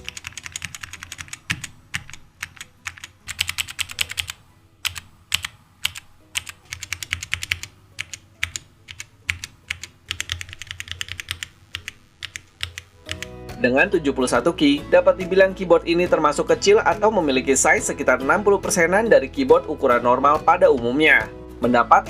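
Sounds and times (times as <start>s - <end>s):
mechanical keyboard typing: 0.0s - 13.3s.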